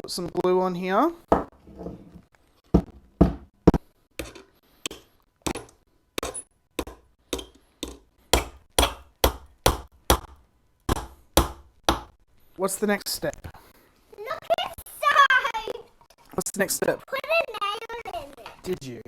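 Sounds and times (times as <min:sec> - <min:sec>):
hammer striking nail into wood: 0:02.8 - 0:12.2.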